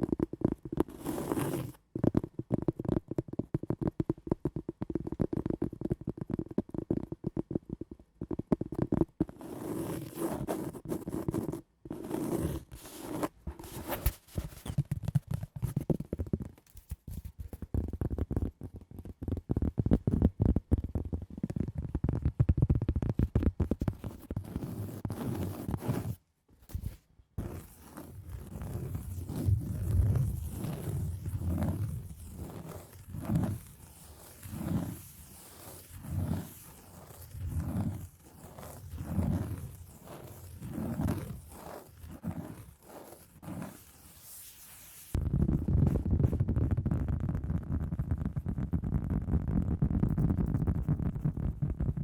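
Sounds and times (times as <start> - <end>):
scratching on cork and wood: 0.7 - 1.8, 8.6 - 45.2.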